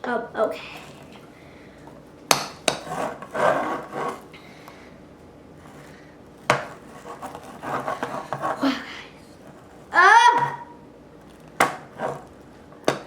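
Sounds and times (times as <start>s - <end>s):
spoon stirring thick mix in bowl: 1.9s - 4.3s, 5.6s - 8.7s, 9.3s - 13.0s.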